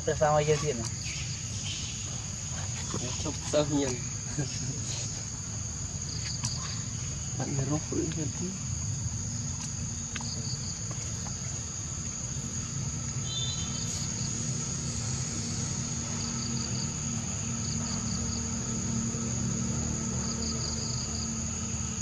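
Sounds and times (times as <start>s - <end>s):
insects chirping: 0.0s - 22.0s.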